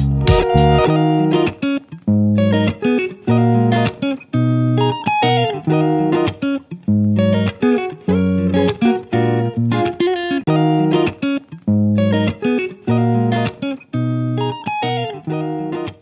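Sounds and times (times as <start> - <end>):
plucked guitar instrumental: 0.0 - 16.0.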